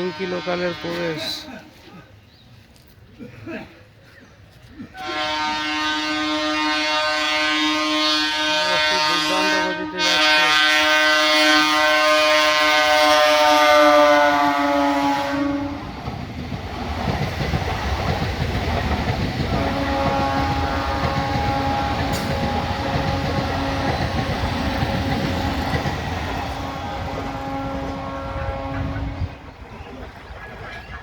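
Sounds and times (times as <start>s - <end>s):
train horn blast: 0.0s - 1.4s, 5.0s - 15.9s, 19.5s - 29.4s
train wheels clattering on rails: 15.8s - 28.0s.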